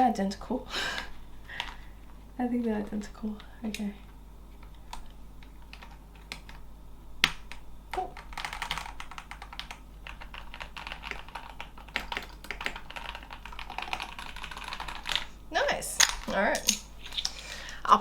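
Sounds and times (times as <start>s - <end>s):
mechanical keyboard keys clacking: 7.2s - 15.3s.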